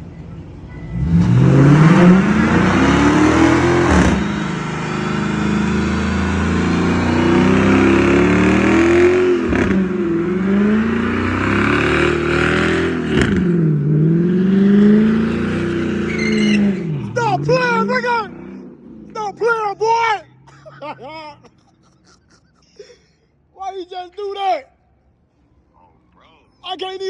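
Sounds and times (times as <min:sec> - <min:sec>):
car engine revving high: 0:00.9 - 0:20.5
spinning tyres hissing: 0:01.0 - 0:11.6.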